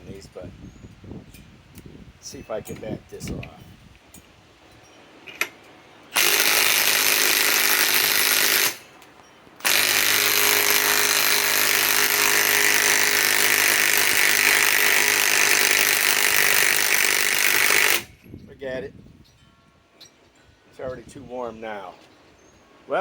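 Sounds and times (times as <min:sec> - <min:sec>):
cordless impact wrench hammering: 0:06.2 - 0:09.0, 0:09.6 - 0:18.2.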